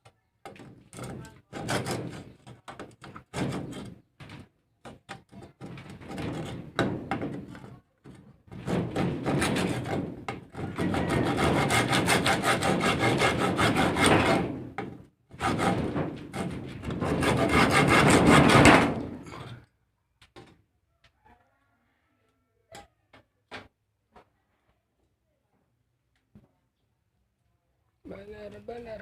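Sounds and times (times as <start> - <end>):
hand saw cutting wood: 0.5 - 4.0, 5.3 - 7.7, 8.6 - 19.4.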